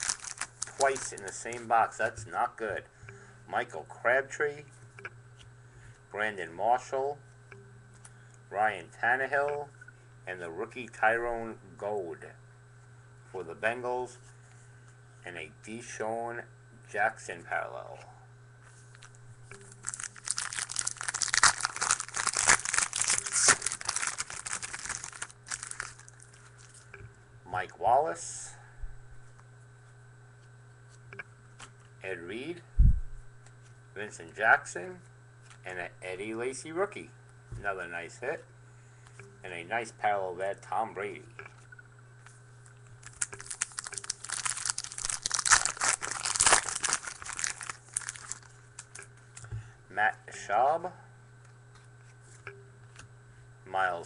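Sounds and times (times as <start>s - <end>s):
wrapper being torn and crinkled: 0.0s - 1.7s, 19.7s - 26.8s, 43.0s - 49.0s.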